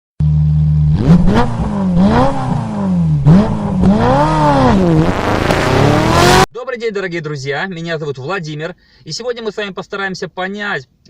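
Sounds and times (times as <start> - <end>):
car engine revving: 0.2 - 6.5.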